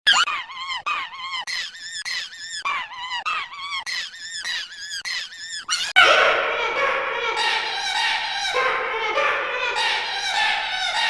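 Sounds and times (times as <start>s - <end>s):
squeaky cartoon voice: 0.0s - 6.0s.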